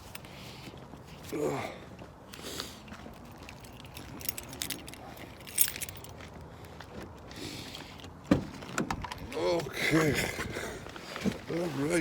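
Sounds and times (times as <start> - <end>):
small things clicking and rattling: 3.1 - 6.3.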